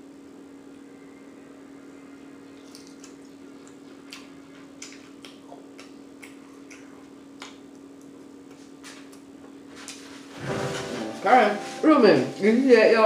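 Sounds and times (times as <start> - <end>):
wet chewing clicks: 2.5 - 9.3.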